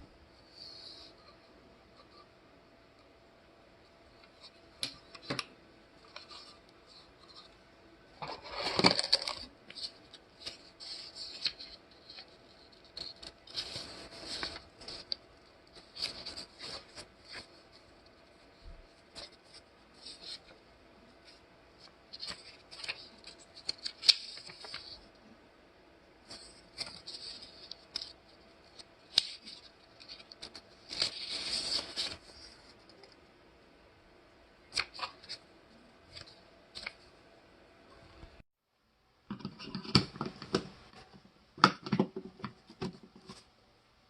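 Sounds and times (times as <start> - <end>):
rustling: 21.2 - 25.2.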